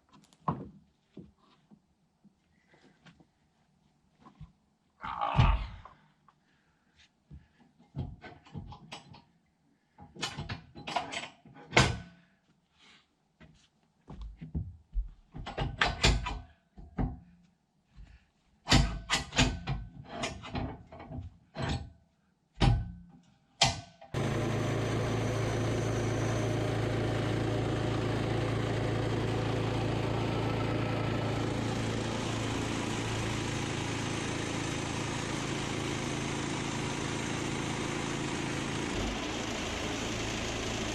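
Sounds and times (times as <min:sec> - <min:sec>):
engine running steadily: 0:24.2 - 0:40.9.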